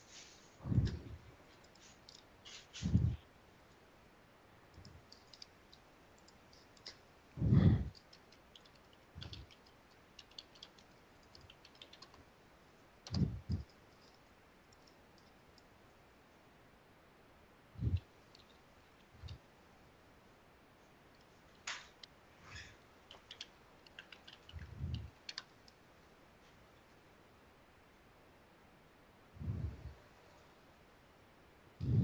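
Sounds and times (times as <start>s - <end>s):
dull low thumps: 0.6s - 1.2s, 7.4s - 7.9s.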